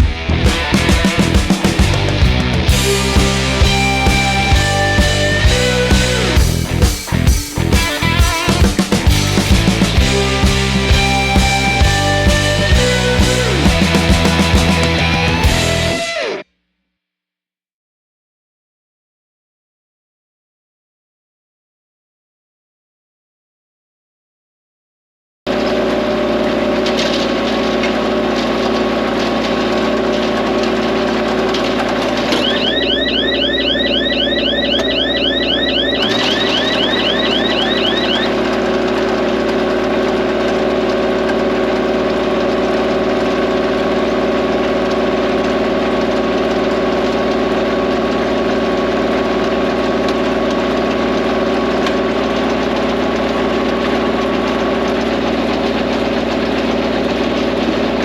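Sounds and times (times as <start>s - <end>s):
rapid high chirps: 32.4s - 38.4s.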